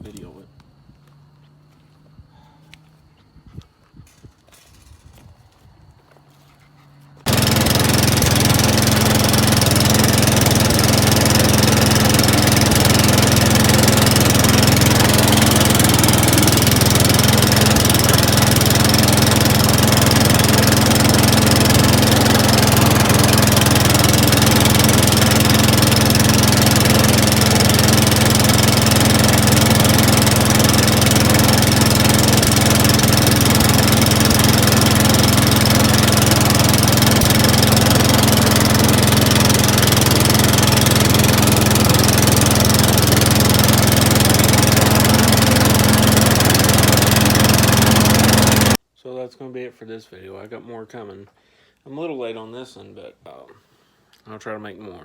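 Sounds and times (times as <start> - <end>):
riding lawn mower engine: 7.1 - 48.8.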